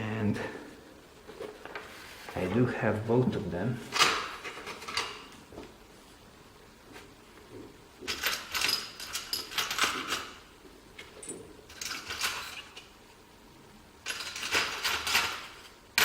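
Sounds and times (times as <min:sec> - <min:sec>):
small metal parts clinking: 0:08.1 - 0:10.4, 0:11.2 - 0:12.9, 0:14.0 - 0:16.0.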